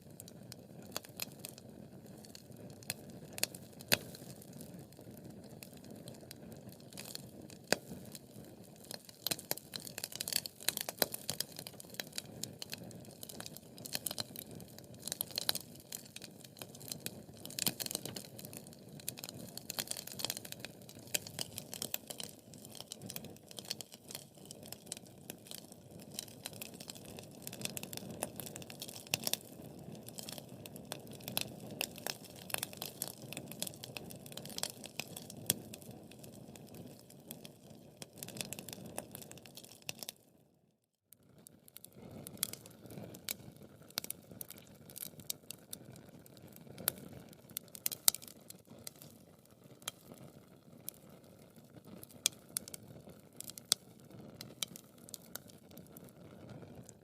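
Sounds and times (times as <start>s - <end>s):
wood fire crackling and popping: 0.0s - 40.2s, 41.2s - 57.0s.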